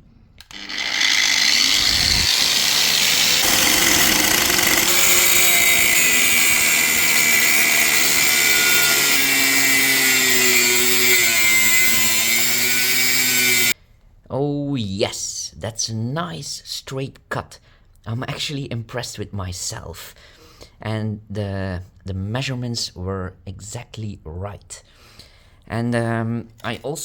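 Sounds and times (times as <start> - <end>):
cutting disc grinding metal: 0.4 - 13.8.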